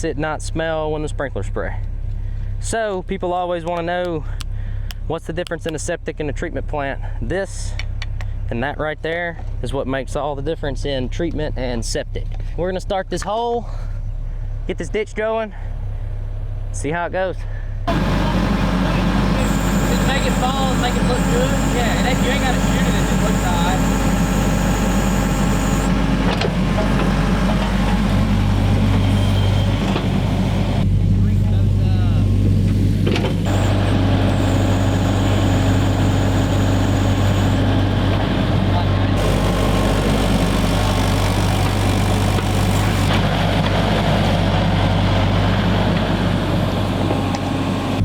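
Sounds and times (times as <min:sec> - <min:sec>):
digging machine engine running: 0:17.9 - 0:48.0.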